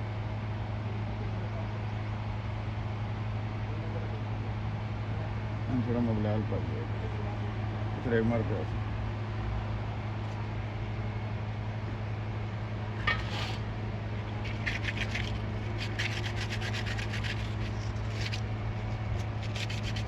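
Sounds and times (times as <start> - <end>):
steady low hum: 0.0 - 20.0
hand rasping strokes on a part: 14.5 - 18.4, 19.2 - 20.0.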